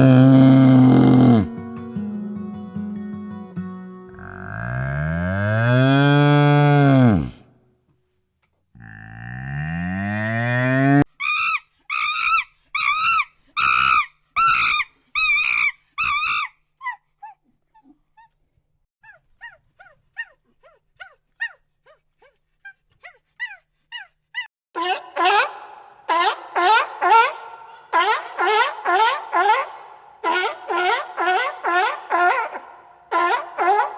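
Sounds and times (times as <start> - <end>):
cow mooing: 0.0 - 1.6, 4.1 - 7.4.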